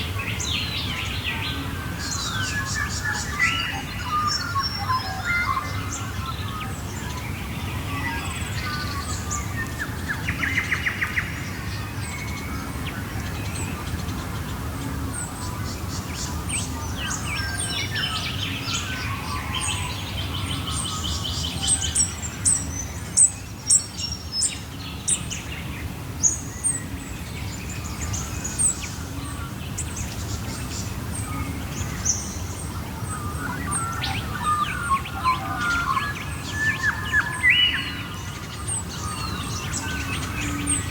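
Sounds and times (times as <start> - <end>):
birds singing in chorus: 0.0 - 40.9.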